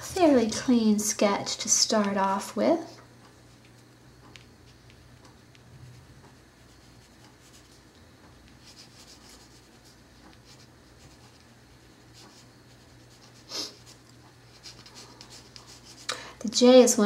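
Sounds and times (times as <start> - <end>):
low steady hum: 0.0 - 17.0
pencil scratching on paper: 6.0 - 7.9, 8.6 - 16.1.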